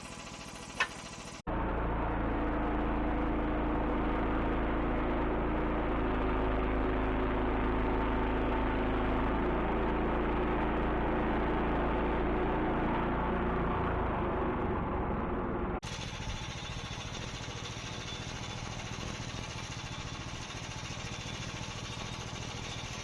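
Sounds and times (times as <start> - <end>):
sawmill engine running: 0.0 - 3.2, 15.8 - 23.0.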